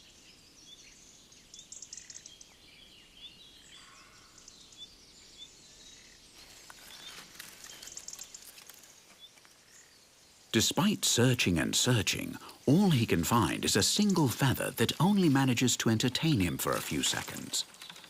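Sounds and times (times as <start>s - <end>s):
small birds chirping: 0.0s - 18.0s
soft crackling: 6.3s - 9.9s.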